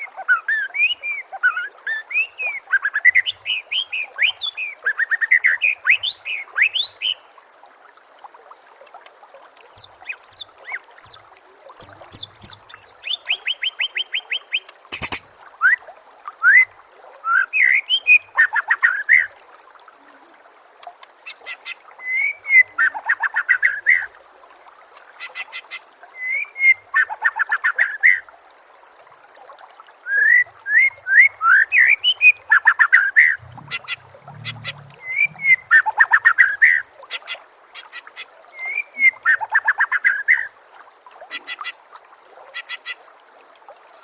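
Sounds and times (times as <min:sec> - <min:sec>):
songbird whistles and trills: 0:11.8 - 0:15.8.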